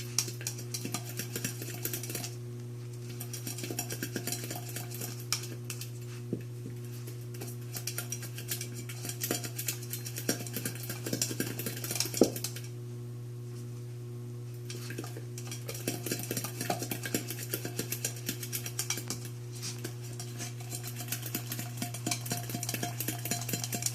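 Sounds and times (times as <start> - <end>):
steady low hum: 0.0 - 23.9
food bowl clattering: 19.8 - 23.9.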